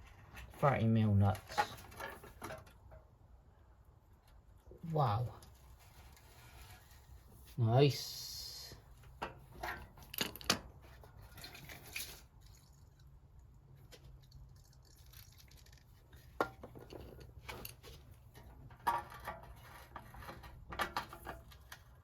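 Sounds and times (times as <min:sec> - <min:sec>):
hand tools and metal parts clinking: 0:09.2 - 0:12.9, 0:13.8 - 0:22.0.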